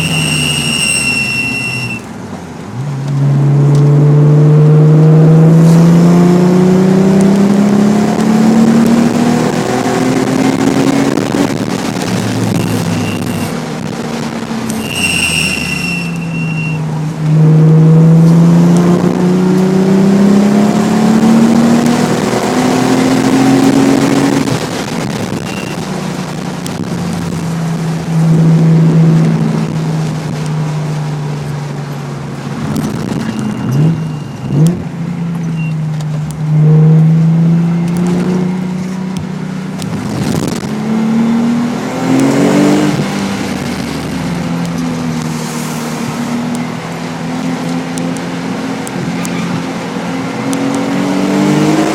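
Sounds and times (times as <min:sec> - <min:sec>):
high squeal: 0:00.0 - 0:02.1, 0:12.5 - 0:13.6, 0:14.7 - 0:16.9, 0:25.4 - 0:25.8, 0:33.2 - 0:34.7
car engine revving: 0:00.0 - 0:51.9.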